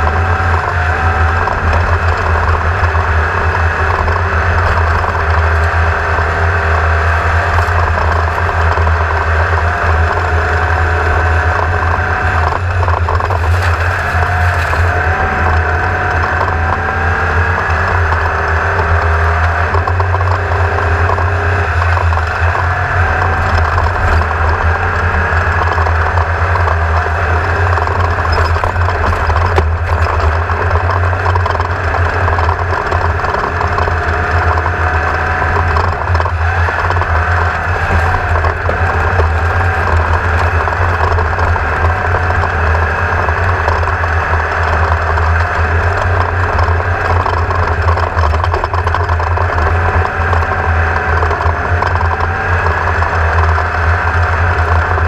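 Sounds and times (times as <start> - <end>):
engine running steadily: 0.0 - 55.0.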